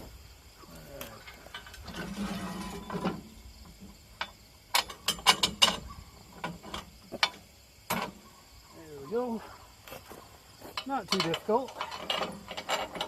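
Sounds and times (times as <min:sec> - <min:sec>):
scraping slide: 0:01.7 - 0:03.2
clicks and knocks of parts: 0:04.2 - 0:08.2, 0:10.7 - 0:13.0.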